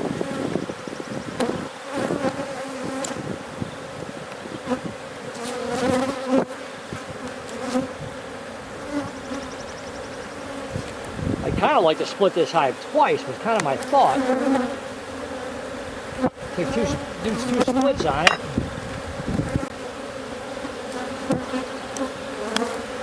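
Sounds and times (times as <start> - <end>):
honey bees buzzing: 0.0 - 23.0.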